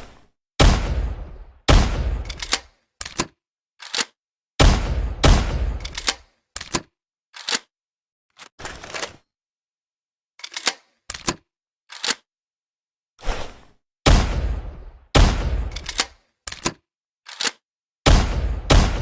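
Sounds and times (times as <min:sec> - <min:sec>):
shotgun shots: 0:00.6 - 0:02.6, 0:04.6 - 0:06.1, 0:14.1 - 0:15.9, 0:18.1 - 0:19.0
metallic gun clicks: 0:02.2 - 0:04.2, 0:05.7 - 0:07.7, 0:10.4 - 0:12.3, 0:15.6 - 0:17.6.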